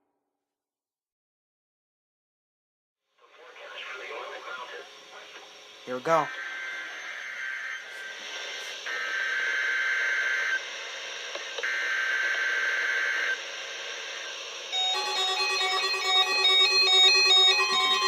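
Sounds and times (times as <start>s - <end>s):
radio static hiss: 3.2s - 15.0s
buzzing data-tone bursts: 14.7s - 18.0s
electronic alert tones: 14.8s - 18.0s.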